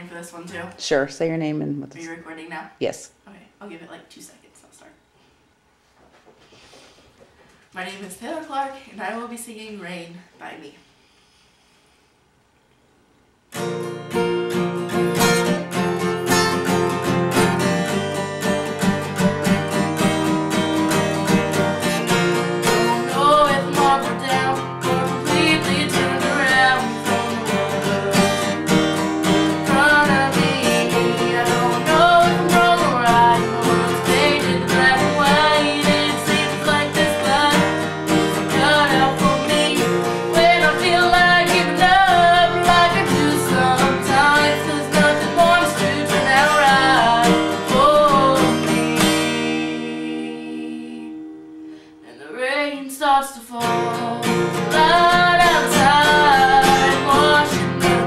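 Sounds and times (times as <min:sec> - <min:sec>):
acoustic guitar strumming: 0:13.5 - 0:52.7, 0:53.5 - 0:58.0
person singing slow song: 0:22.6 - 0:58.0.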